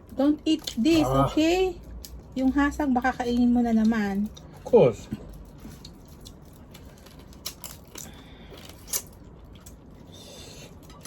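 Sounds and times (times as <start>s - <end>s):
crab shell cracking: 6.2s - 9.8s.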